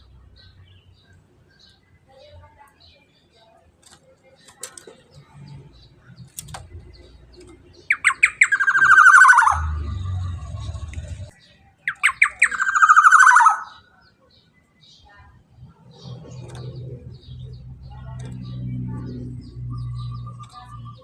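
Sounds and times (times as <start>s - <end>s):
bird giving raspy calls: 7.8s - 11.3s, 11.9s - 13.8s
low rumble: 9.5s - 11.3s.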